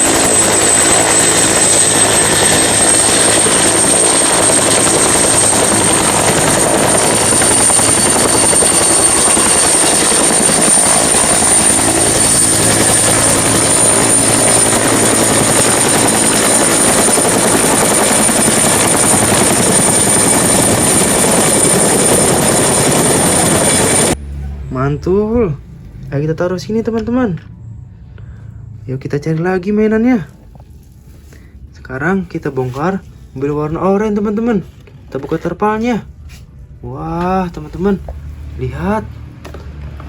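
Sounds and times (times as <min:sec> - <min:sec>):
toy helicopter rotor noise: 0:00.0 - 0:24.2
thin high whine: 0:00.0 - 0:26.2.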